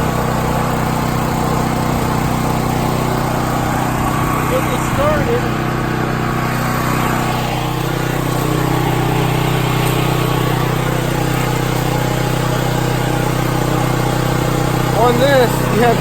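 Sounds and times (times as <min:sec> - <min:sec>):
generator engine running: 0:00.0 - 0:16.0.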